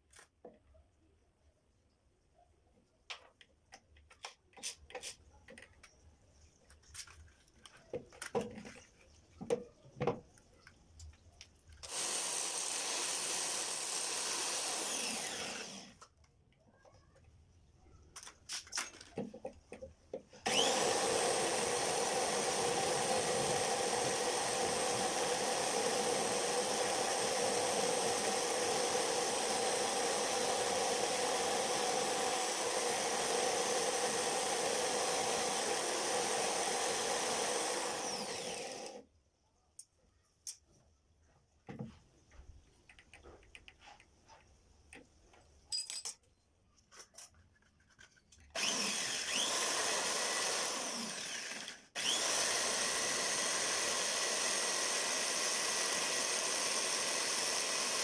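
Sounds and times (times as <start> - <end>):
clicks and knocks of parts: 18.1 - 20.3, 42.7 - 48.6
motor running: 20.4 - 39.0, 48.6 - 58.0.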